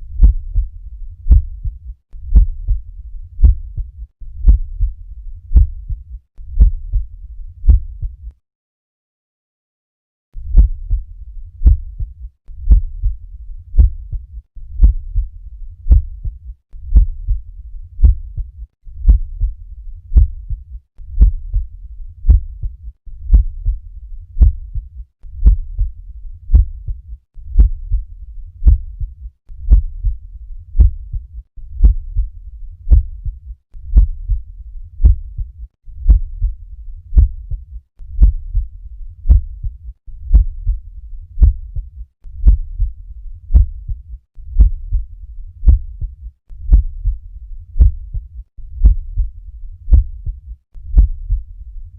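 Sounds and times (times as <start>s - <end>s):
heartbeat through stethoscope: 0.0s - 8.4s, 10.4s - 51.6s.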